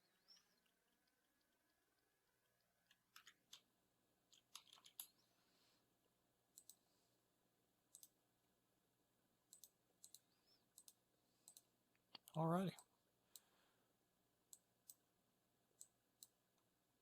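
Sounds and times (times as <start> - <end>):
faint computer mouse clicks: 6.5 - 6.8, 7.9 - 8.2, 9.5 - 13.5.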